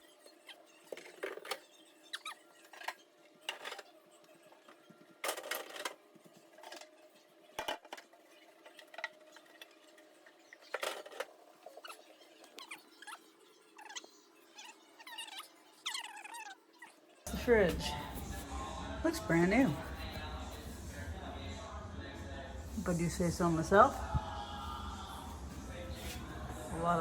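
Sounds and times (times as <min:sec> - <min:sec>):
cloth squeaking on plastic: 0:11.6 - 0:17.1.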